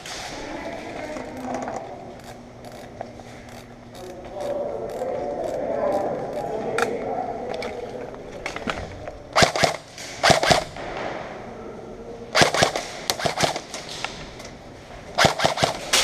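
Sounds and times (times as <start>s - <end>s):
airsoft guns firing bursts: 9.4s - 11.0s, 12.4s - 13.9s, 15.2s - 16.0s.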